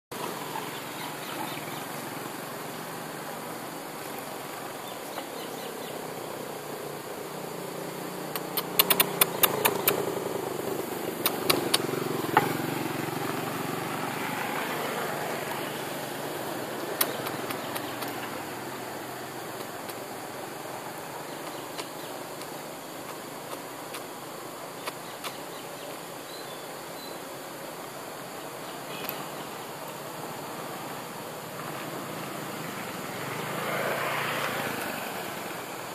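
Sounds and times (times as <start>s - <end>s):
vehicle engine passing: 0.1s - 24.7s, 28.0s - 35.9s
sharp clicks: 8.3s - 10.1s, 11.2s - 11.9s, 16.8s - 18.3s, 19.6s - 20.0s, 21.4s - 24.1s, 24.8s - 25.4s.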